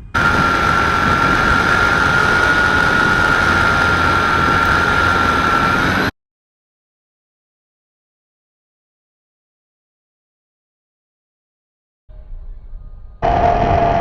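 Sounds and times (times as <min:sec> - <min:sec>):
model airplane motor whining: 0:00.0 - 0:06.1.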